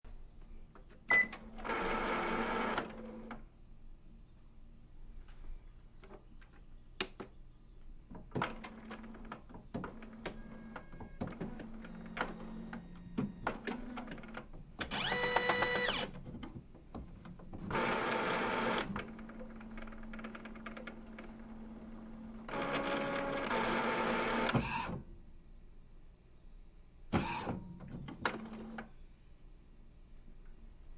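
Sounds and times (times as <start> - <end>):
steady printer hum: 1.4 - 3.4, 8.6 - 16.2, 17.6 - 25.0
printer motor whirring: 8.7 - 16.2, 17.6 - 25.0.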